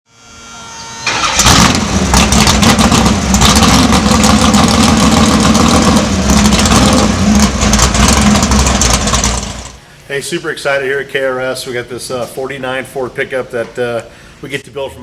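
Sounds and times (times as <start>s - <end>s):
car engine starting and running: 0.8s - 9.8s.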